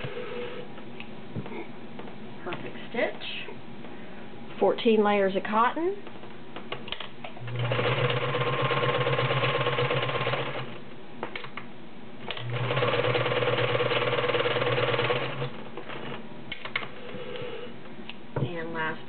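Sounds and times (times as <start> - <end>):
sewing machine stitching: 7.4 - 10.7, 12.3 - 16.2.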